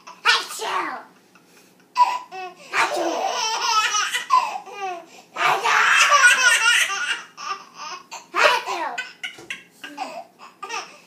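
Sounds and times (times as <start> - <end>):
child laughing: 1.1 - 7.5.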